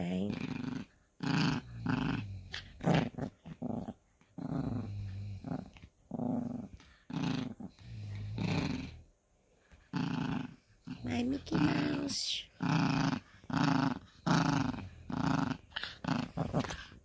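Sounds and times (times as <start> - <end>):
small dog growling: 0.0 - 9.1, 9.7 - 17.0.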